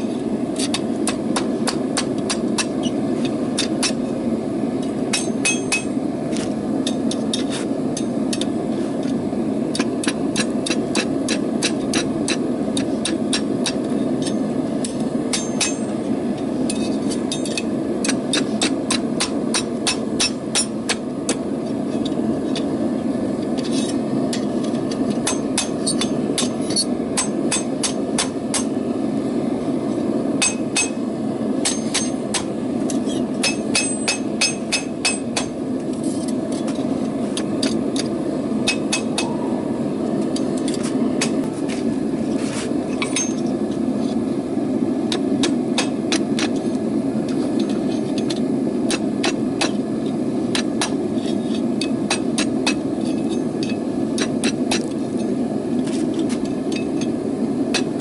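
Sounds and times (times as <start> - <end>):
hammer striking metal on anvil: 4.8 - 6.0, 9.8 - 16.0, 16.7 - 21.4, 23.8 - 28.8, 30.4 - 31.0, 31.6 - 35.6, 37.6 - 39.5, 43.0 - 43.5, 45.4 - 46.5.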